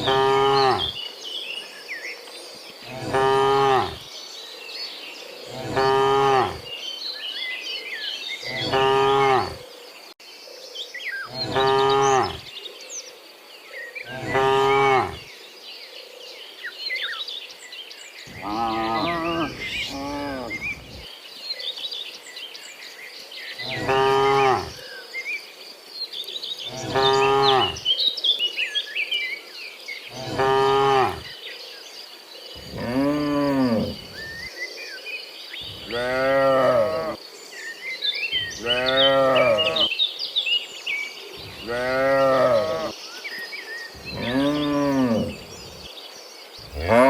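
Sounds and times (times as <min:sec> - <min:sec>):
cattle mooing: 0:00.0 - 0:00.9, 0:02.9 - 0:04.0, 0:05.5 - 0:06.6, 0:08.5 - 0:09.6, 0:11.3 - 0:12.4, 0:14.1 - 0:15.2, 0:18.3 - 0:21.0, 0:23.6 - 0:24.8, 0:26.7 - 0:27.8, 0:30.2 - 0:31.2, 0:32.6 - 0:34.3, 0:35.7 - 0:37.2, 0:38.4 - 0:39.9, 0:41.4 - 0:42.9, 0:44.0 - 0:45.9, 0:46.7 - 0:47.0
faint high chirping: 0:18.2 - 0:21.0, 0:41.3 - 0:47.0.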